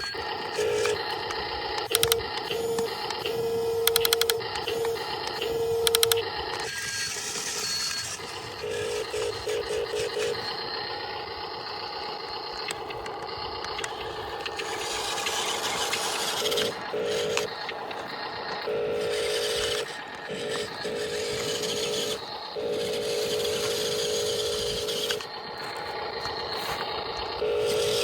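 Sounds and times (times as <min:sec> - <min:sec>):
small electric motors whining: 0:00.0 - 0:28.0
gears and tracks rattling in dirt: 0:11.2 - 0:28.0.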